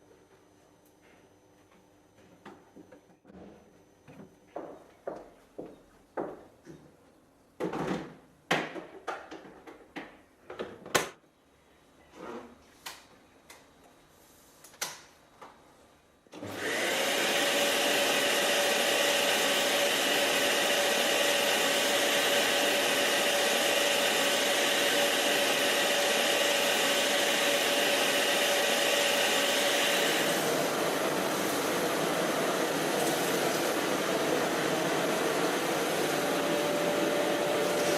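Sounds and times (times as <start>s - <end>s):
vacuum cleaner running: 16.3s - 37.9s.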